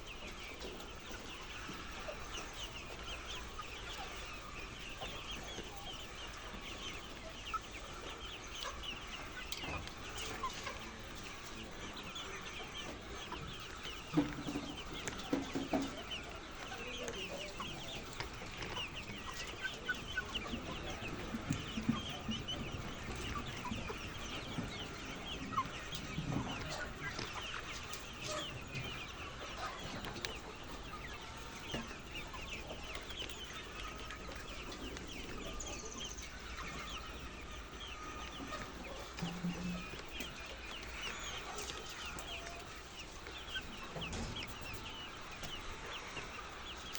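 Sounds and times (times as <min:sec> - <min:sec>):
hens clucking: 0:00.0 - 0:46.9.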